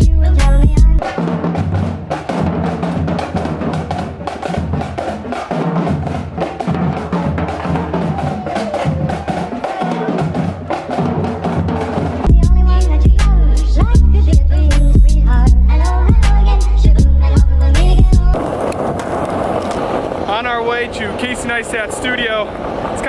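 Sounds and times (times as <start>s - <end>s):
heavy bass: 0.0s - 1.0s, 12.3s - 18.4s
drum-driven background music: 0.0s - 18.4s.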